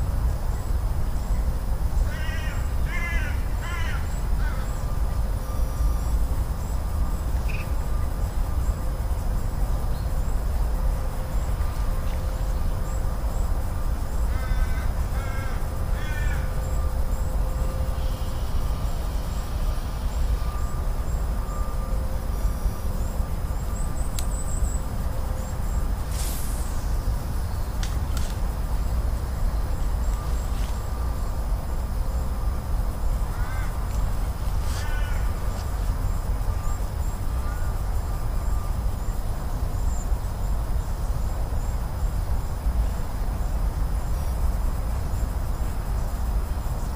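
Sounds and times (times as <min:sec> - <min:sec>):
steady low rumble: 0:00.0 - 0:46.9
crow cawing: 0:02.1 - 0:04.6, 0:14.3 - 0:16.5, 0:33.3 - 0:33.8, 0:34.7 - 0:35.4.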